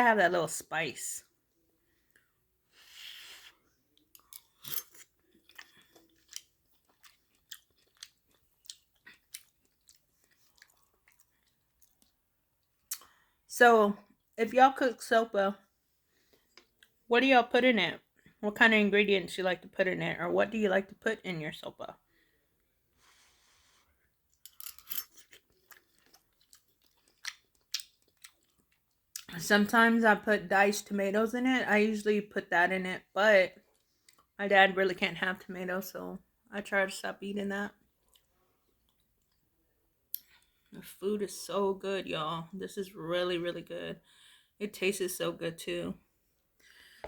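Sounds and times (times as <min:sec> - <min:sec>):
wet chewing: 0:03.9 - 0:13.1, 0:25.1 - 0:29.3
lip smacks: 0:12.9 - 0:13.1.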